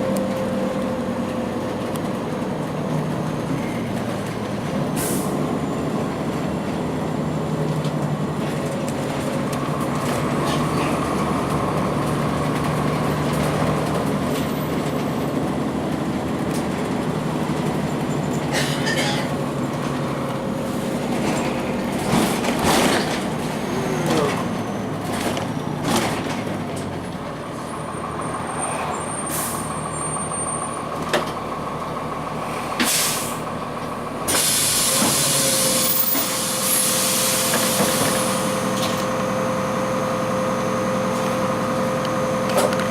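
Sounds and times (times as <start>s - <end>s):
diesel bus engine running: 0.0s - 42.9s
brief hisses and knocks: 32.8s - 33.4s, 34.3s - 35.7s.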